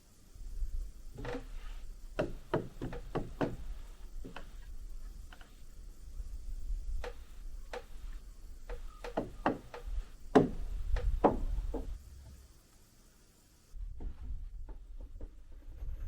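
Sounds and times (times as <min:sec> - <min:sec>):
sharp knocks and taps: 0:02.2 - 0:05.6, 0:07.0 - 0:12.0.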